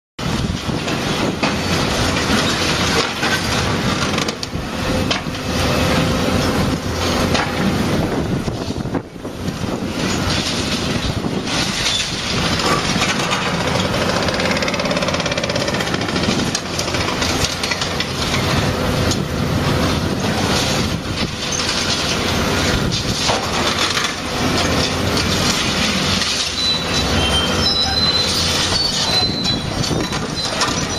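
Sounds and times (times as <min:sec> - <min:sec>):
excavator engine and hydraulics: 0:00.2 - 0:30.9
high squeals: 0:26.3 - 0:30.9.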